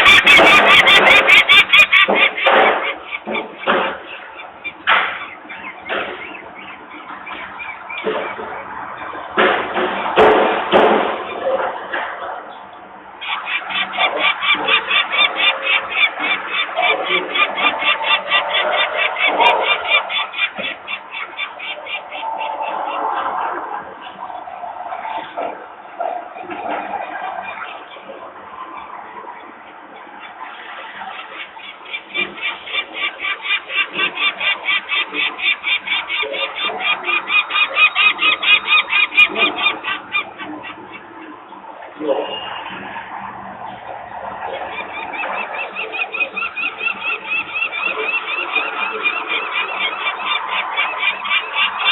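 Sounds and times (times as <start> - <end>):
falcon alarm call: 0.0 - 9.2
falcon harsh alarm calls: 0.0 - 9.3, 13.2 - 24.2, 30.1 - 41.3, 44.1 - 51.9.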